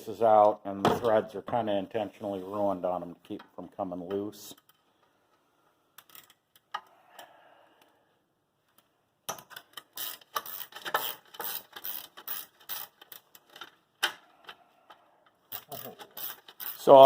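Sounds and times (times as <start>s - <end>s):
metal tools clicking and scraping: 15.5s - 17.0s.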